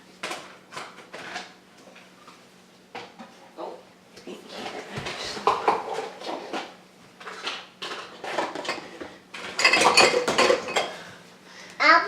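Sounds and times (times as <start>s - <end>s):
dishes and cutlery clinking: 4.6s - 11.0s.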